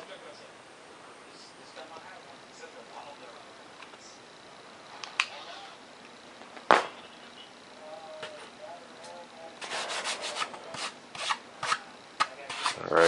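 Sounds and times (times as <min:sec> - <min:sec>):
rubbing foam board: 0:09.6 - 0:12.8.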